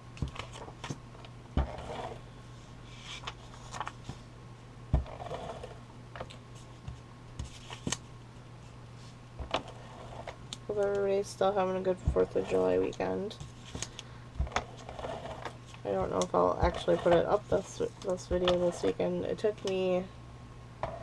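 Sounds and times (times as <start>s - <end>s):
steady low hum: 0.0s - 21.0s
paper rustling: 3.0s - 4.2s, 7.4s - 8.0s.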